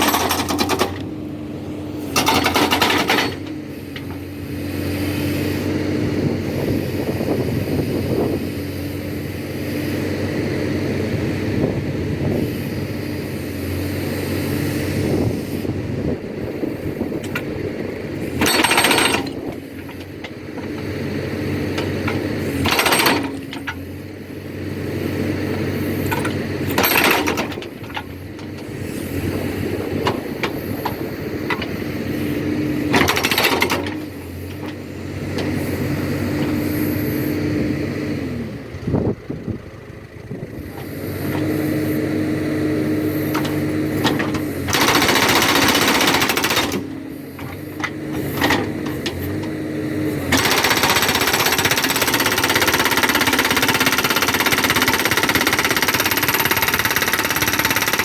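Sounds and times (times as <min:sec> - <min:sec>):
hydraulic rock breaker hammering: 0:00.0 - 0:01.2, 0:02.0 - 0:04.3, 0:18.2 - 0:24.0, 0:25.5 - 0:32.0, 0:32.6 - 0:35.7, 0:42.9 - 0:58.0
backhoe engine under load: 0:00.0 - 0:58.0.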